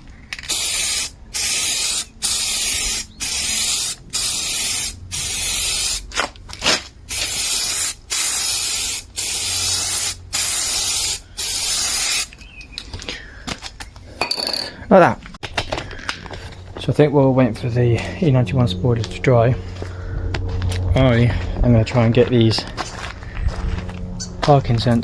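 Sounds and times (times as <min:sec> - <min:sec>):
aerosol can spraying bursts: 0:00.5 - 0:12.3.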